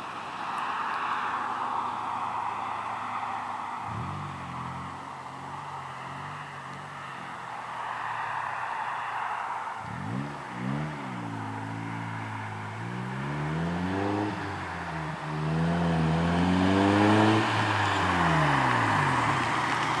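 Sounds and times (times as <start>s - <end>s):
car engine revving: 9.8s - 20.0s.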